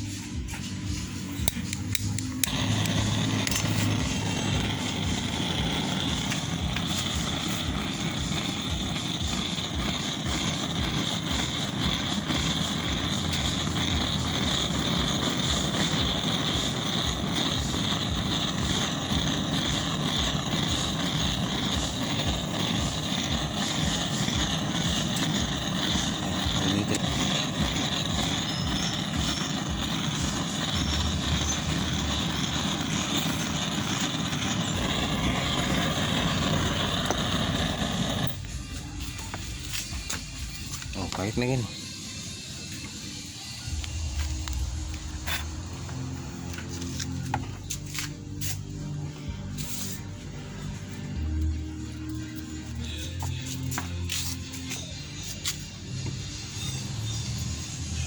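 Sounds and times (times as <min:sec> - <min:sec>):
gas torch flame rushing: 0:00.0 - 0:48.8, 0:49.5 - 0:51.4, 0:52.0 - 0:58.0.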